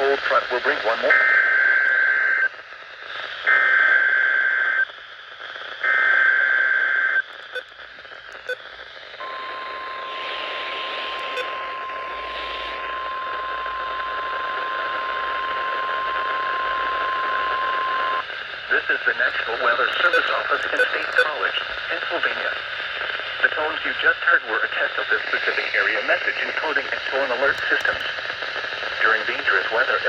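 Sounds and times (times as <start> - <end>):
radio static hiss: 0.0 - 30.0
digital data bursts: 7.4 - 7.7, 8.4 - 8.6, 11.2 - 11.6, 19.2 - 21.4
steady alarm tone: 8.4 - 8.6, 9.2 - 14.1, 20.0 - 21.3.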